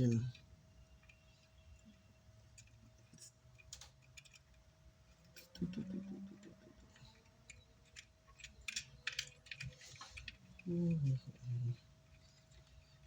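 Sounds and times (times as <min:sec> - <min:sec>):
small parts and tools clicking: 0:00.0 - 0:13.0
low murmur of voice: 0:10.6 - 0:11.9.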